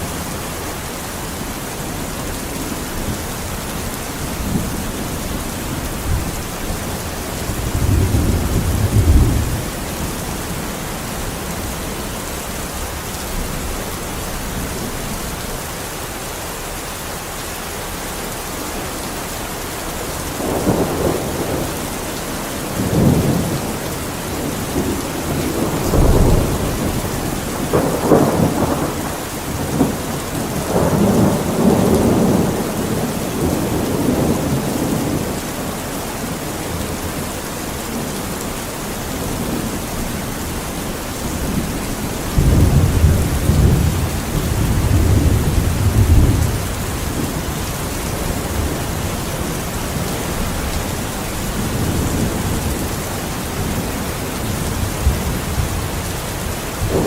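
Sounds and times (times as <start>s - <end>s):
heavy rain: 0.0s - 57.0s
rolling thunder: 3.0s - 12.0s, 20.3s - 35.5s, 41.2s - 57.0s.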